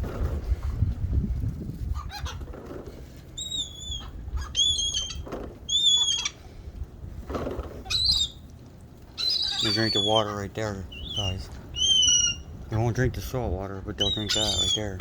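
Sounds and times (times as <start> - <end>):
wind rumble on microphone: 0.0 - 5.7, 6.4 - 8.3, 10.5 - 15.0
high-pitched bird calls: 3.4 - 6.4, 7.8 - 8.5, 9.2 - 12.6, 14.0 - 15.0.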